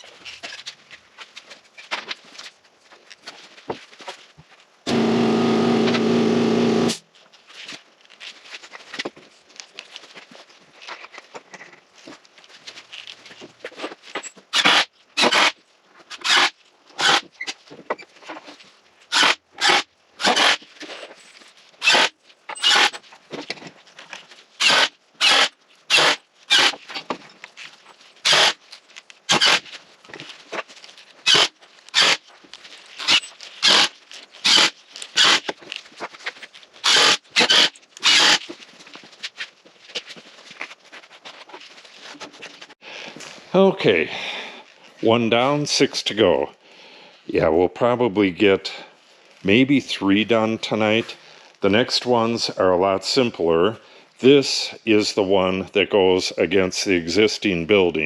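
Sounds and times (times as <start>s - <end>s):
handsaw cutting wood: 4.9s - 7.0s, 14.6s - 15.5s, 16.2s - 17.2s, 19.1s - 20.6s, 21.8s - 23.0s, 24.6s - 26.8s, 28.2s - 28.6s, 29.3s - 29.6s, 31.3s - 32.2s, 33.0s - 35.4s, 36.8s - 38.4s.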